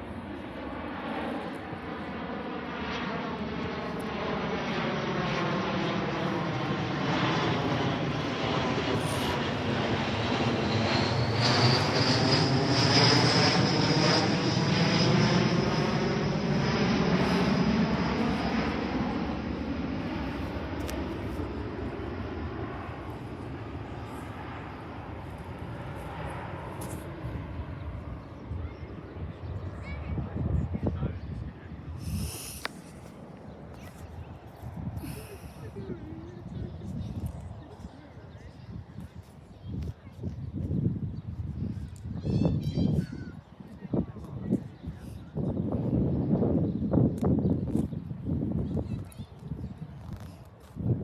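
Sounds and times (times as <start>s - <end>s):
jet engines on a flyby: 0.0s - 51.0s
high engine whine: 3.0s - 28.1s.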